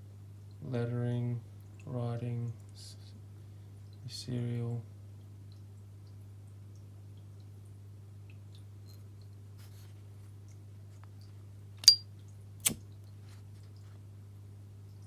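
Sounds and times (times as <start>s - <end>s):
lighter clicks with high ring: 11.8s - 12.0s.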